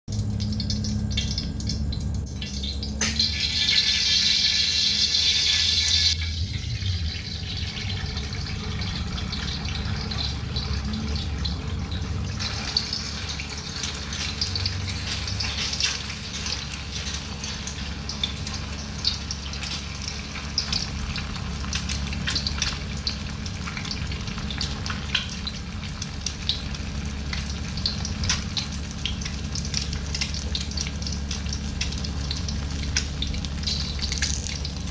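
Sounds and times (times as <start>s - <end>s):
steady low hum: 0.1s - 4.9s
egg sizzling in hot oil: 0.1s - 34.9s.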